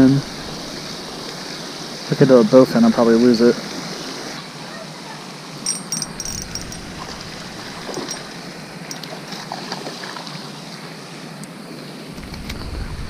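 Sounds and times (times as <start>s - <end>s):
wind on microphone: 12.1s - 13.0s.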